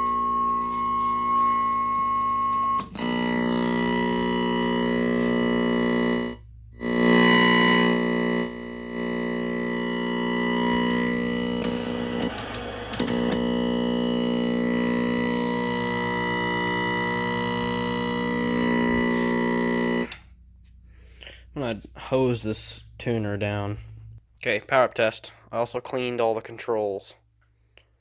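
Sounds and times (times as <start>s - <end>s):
tv speaker buzzing: 0.0s - 20.4s.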